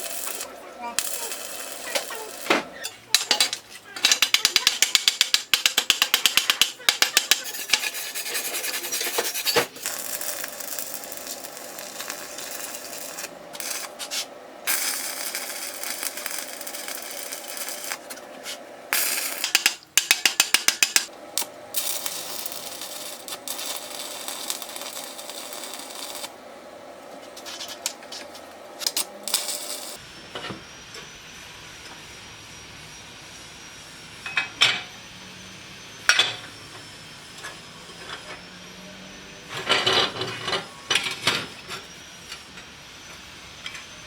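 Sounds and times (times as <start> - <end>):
file rasping on metal: 4.1 - 14.3.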